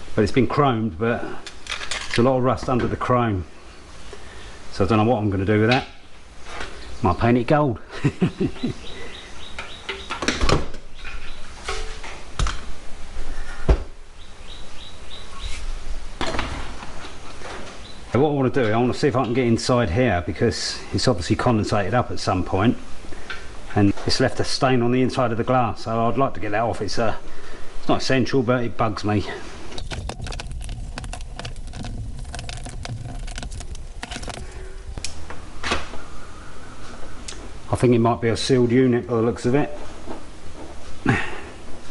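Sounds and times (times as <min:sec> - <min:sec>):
bird chirping: 0:08.2 - 0:10.3, 0:10.9 - 0:11.6, 0:14.1 - 0:15.7, 0:17.8 - 0:18.1.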